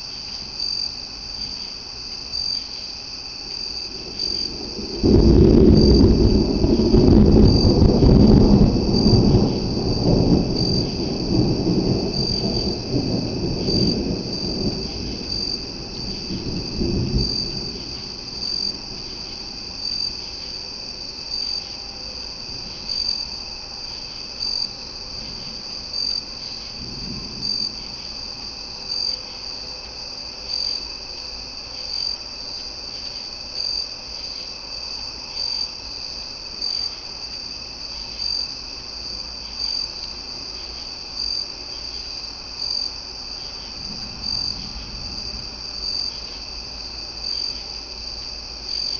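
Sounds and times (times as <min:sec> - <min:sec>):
crickets chirping: 0:00.0 - 0:48.9
thunder rumbling: 0:03.6 - 0:31.0, 0:42.4 - 0:48.9.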